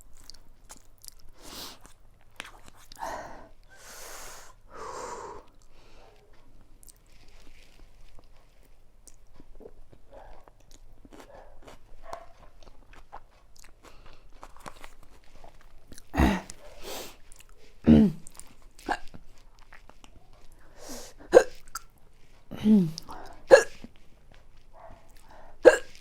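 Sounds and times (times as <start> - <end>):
person chewing noodles: 0.0 - 26.0
loud hiccups: 16.1 - 16.6, 17.8 - 19.2, 21.2 - 21.9, 22.5 - 23.9, 25.6 - 26.0.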